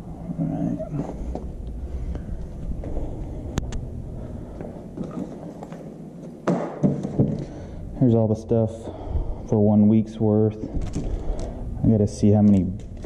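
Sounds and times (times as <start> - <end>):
low steady rumble: 0.0 - 5.5
knocks and clicks of items handled: 5.0 - 7.6.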